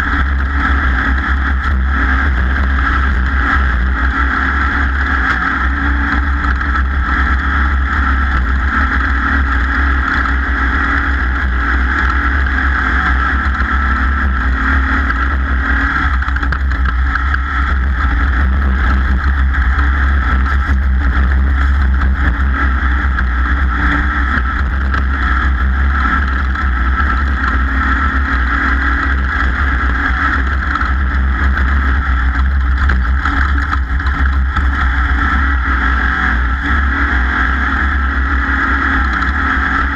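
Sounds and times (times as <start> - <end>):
racing boat engine drone: 0.0 - 39.9.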